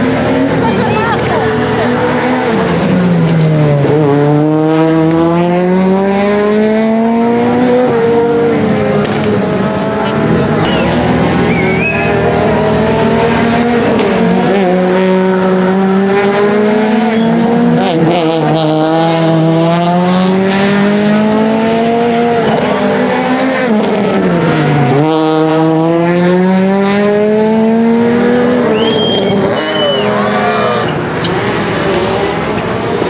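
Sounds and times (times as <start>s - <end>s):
rally car engine accelerating: 0.0s - 33.0s
tyre squeal: 10.6s - 12.3s, 17.0s - 17.8s, 28.6s - 30.9s.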